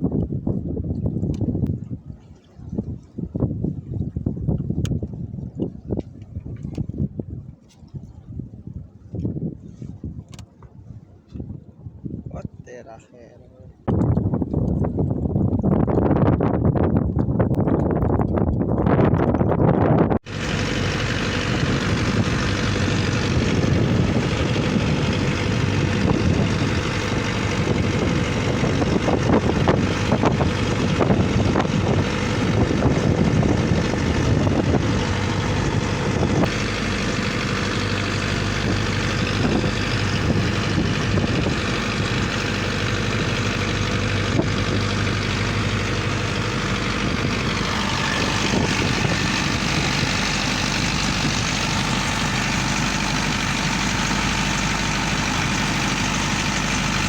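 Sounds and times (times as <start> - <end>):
engine running: 20.2 - 57.0.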